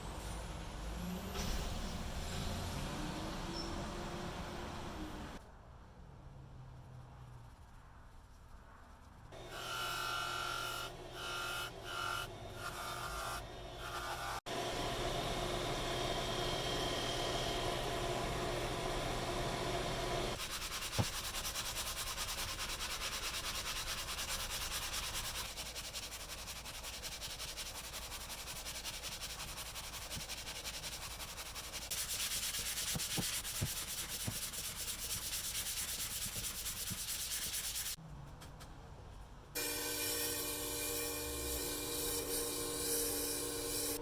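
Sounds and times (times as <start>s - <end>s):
sanding: 20.3s - 38.0s.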